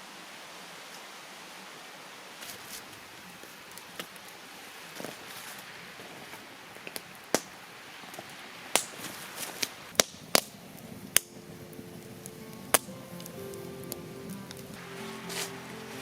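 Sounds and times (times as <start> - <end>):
faint fire hiss: 0.0 - 16.0
campfire crackling and popping: 2.8 - 16.0
soft music notes: 11.1 - 16.0.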